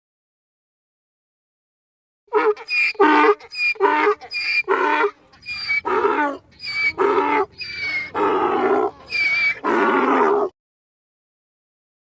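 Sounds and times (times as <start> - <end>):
animal calling rhythmically: 2.3 - 10.5.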